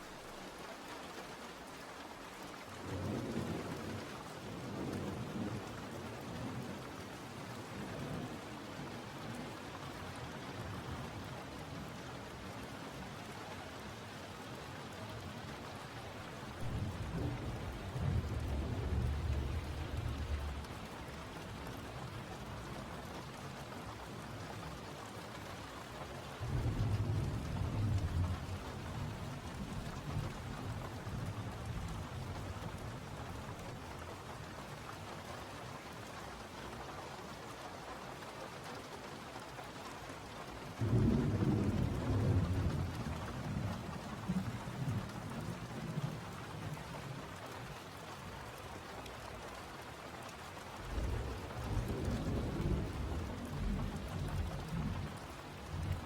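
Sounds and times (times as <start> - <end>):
steady rain: 0.0 - 56.0
thunder rumbling: 16.0 - 23.1, 26.4 - 32.7, 40.8 - 46.2, 50.8 - 56.0.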